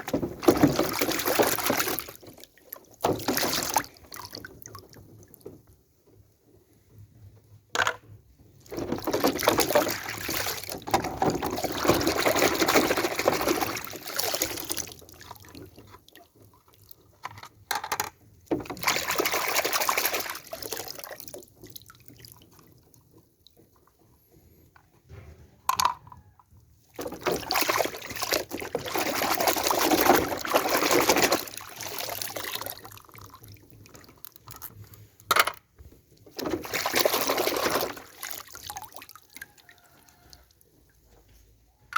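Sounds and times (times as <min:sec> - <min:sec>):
water pouring: 0:00.0 - 0:05.0, 0:08.6 - 0:17.1, 0:18.6 - 0:24.0, 0:26.9 - 0:35.0, 0:36.2 - 0:40.7.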